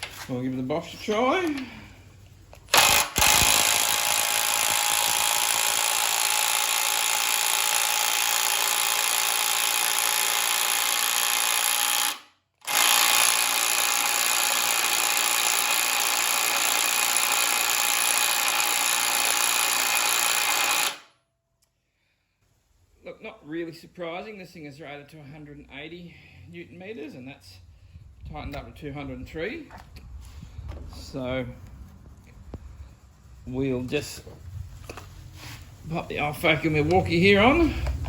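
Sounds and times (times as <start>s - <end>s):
impact driver hammering: 2.7s - 21.0s.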